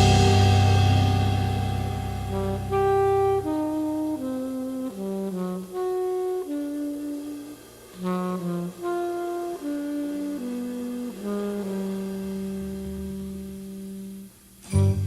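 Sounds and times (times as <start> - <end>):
slow melody of held notes: 0.0 - 15.0.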